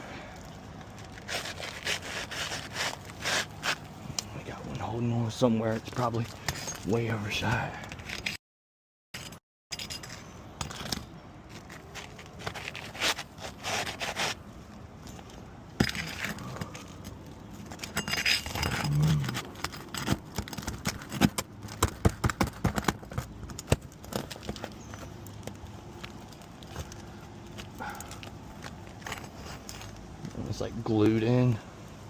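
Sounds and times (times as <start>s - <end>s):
shingle scraping and crackling: 0.3s - 8.4s, 9.8s - 31.5s.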